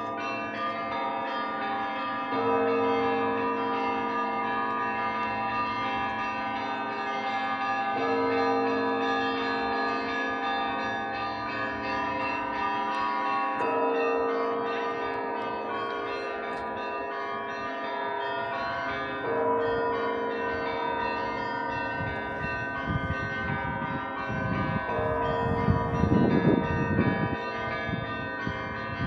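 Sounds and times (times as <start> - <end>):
church bells pealing: 0.0 - 29.0
low bell strikes: 21.7 - 29.0.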